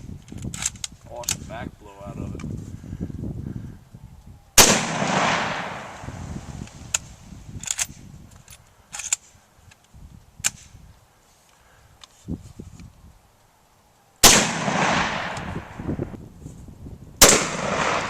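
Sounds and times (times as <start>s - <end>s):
rifle shot: 4.6s - 6.2s, 14.2s - 15.8s, 17.2s - 18.0s.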